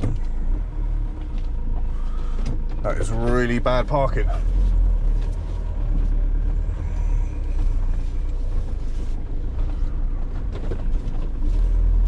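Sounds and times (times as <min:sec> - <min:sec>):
van engine rumble: 0:00.0 - 0:12.0.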